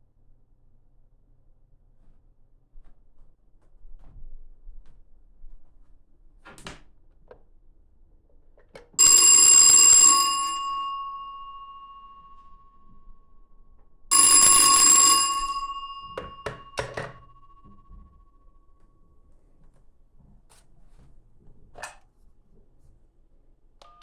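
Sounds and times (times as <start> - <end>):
telephone bell ringing: 9.0 - 13.5, 14.1 - 18.7.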